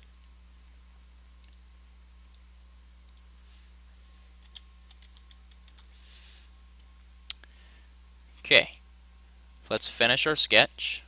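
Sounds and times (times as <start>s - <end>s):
low electrical hum: 0.0s - 11.0s
keyboard typing: 4.4s - 5.9s.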